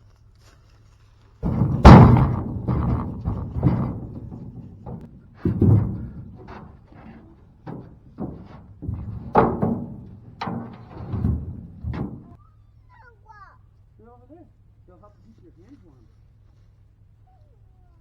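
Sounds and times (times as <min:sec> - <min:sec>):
logs thudding into a trailer: 0:01.4 - 0:12.4.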